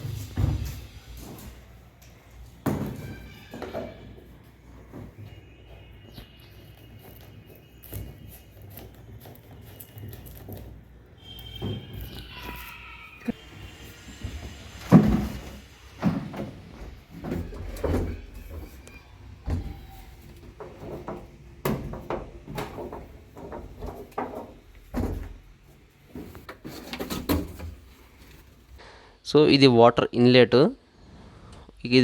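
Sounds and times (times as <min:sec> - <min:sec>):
knocks and scraping from handling: 0:14.2 - 0:28.8.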